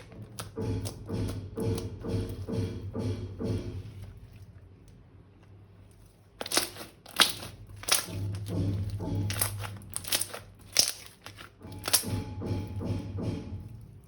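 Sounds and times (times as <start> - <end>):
crunchy slime squished: 3.8 - 12.8.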